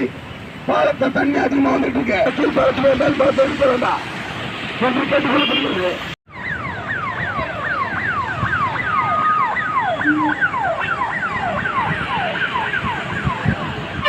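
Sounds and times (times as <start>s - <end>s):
emergency siren wailing: 6.3s - 14.0s.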